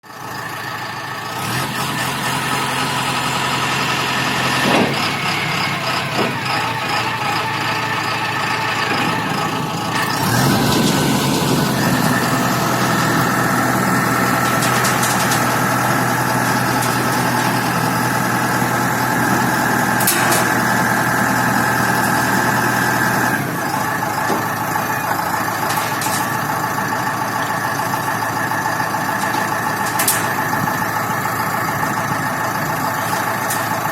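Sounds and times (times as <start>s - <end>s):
diesel truck engine running: 0.0s - 33.9s.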